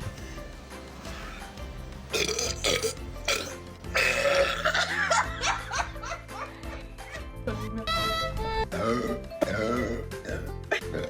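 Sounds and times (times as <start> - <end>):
person burping loudly: 2.1 - 5.2, 8.7 - 11.0.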